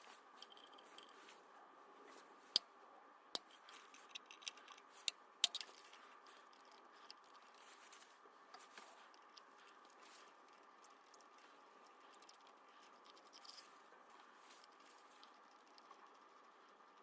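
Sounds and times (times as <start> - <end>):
faint steady hum: 0.0 - 17.0
tools clicking and knocking: 3.4 - 7.6.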